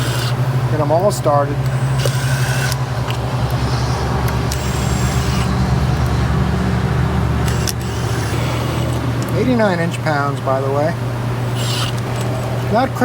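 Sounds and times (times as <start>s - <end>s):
low mechanical drone: 0.0s - 13.0s.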